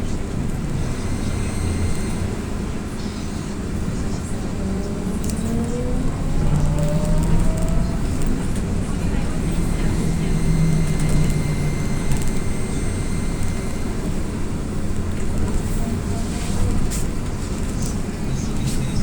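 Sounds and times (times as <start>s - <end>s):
trolleybus rumbling: 0.0s - 19.0s
electric drive whine rising: 9.4s - 15.1s.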